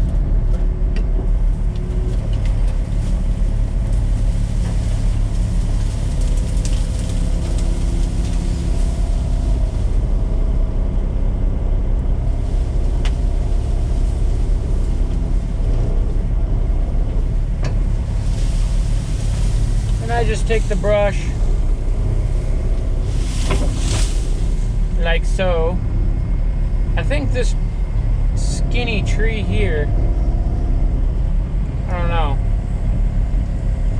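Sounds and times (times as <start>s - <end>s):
diesel engine rumbling: 0.0s - 33.9s.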